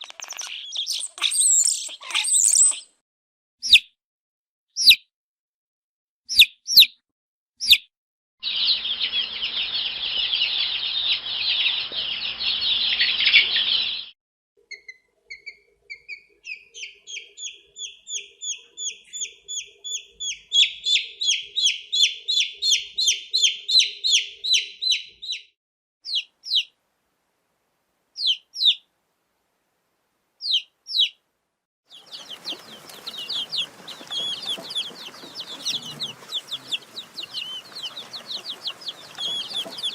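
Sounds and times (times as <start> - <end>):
baby chicks peeping: 0.0 - 2.9, 4.8 - 5.0, 8.4 - 14.1, 14.7 - 26.8, 28.2 - 28.8, 30.4 - 31.2, 31.9 - 39.9.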